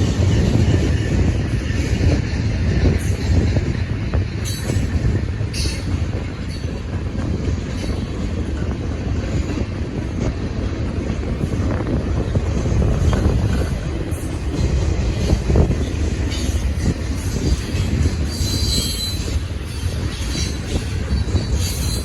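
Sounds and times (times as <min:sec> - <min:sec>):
train wheels rumbling on rail: 0:00.0 - 0:22.0
high-pitched wheel squeaks: 0:16.2 - 0:22.0.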